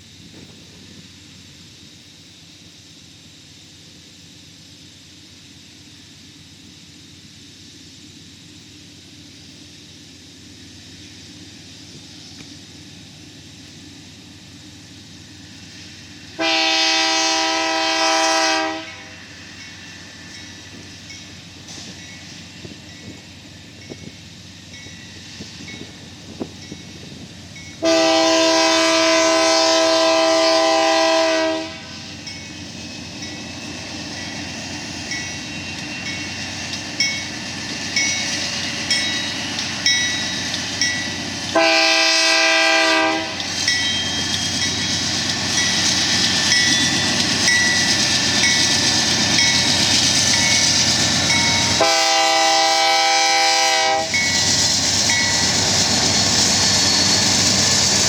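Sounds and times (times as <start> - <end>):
diesel locomotives rumbling: 0.0 - 58.0
locomotive air horn blasts: 16.4 - 19.1, 27.8 - 32.1, 41.5 - 43.5, 51.6 - 54.2.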